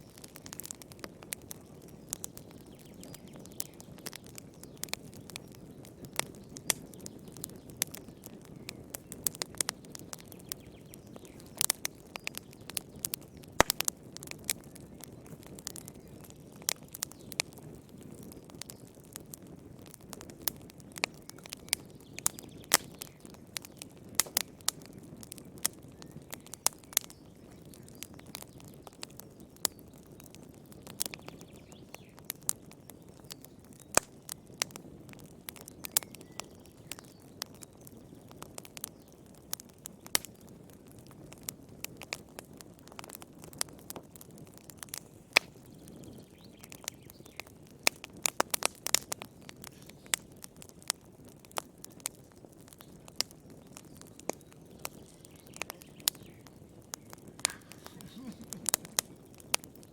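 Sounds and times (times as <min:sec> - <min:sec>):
fire crackling and popping: 0:00.0 - 0:59.9
soft rush of flame: 0:52.6 - 0:59.9.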